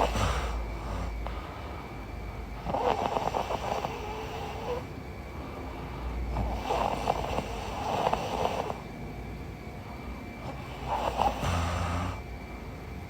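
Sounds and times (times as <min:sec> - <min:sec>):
woman snoring: 0:00.0 - 0:01.3, 0:02.6 - 0:04.9, 0:06.4 - 0:08.8, 0:10.4 - 0:12.2.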